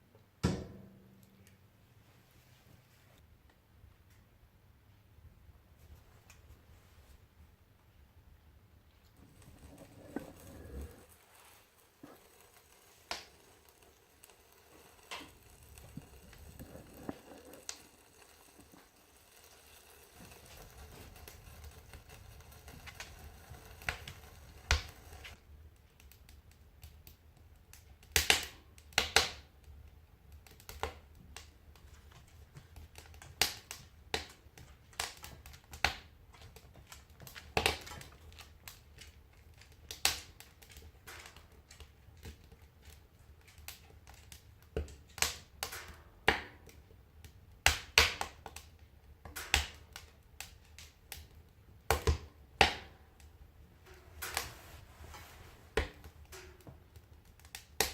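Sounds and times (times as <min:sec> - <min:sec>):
soft hiss: 0:01.1 - 0:26.6, 0:53.0 - 0:57.9
wood fire crackling and popping: 0:08.8 - 0:57.9.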